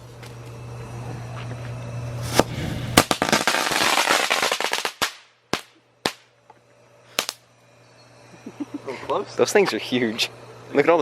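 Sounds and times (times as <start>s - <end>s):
firecracker bangs: 2.2s - 6.3s.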